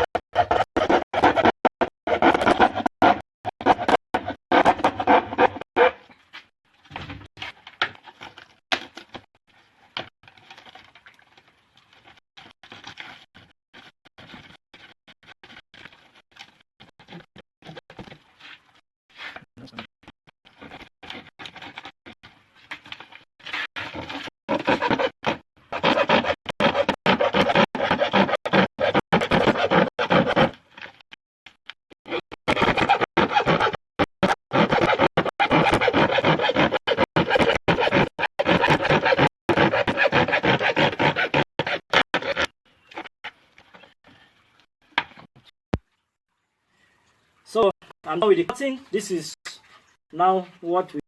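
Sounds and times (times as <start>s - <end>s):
plastic dustpan being cut: 23.4s - 30.6s, 32.1s - 42.5s.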